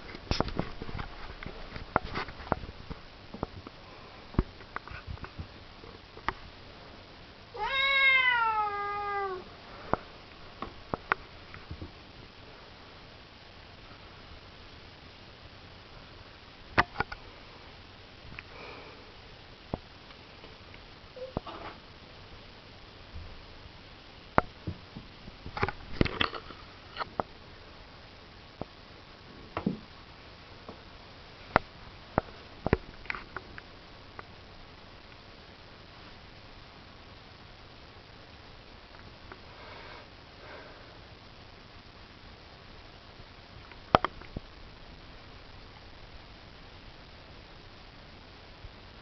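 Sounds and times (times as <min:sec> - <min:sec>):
cat meowing: 0:07.6 - 0:09.5
faint clicks and taps: 0:43.6 - 0:44.5.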